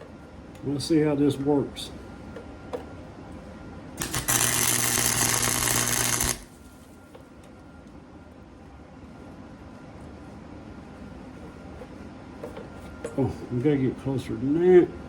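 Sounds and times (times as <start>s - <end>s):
low electrical hum: 0.0s - 15.0s
welding arc crackling: 4.0s - 6.7s.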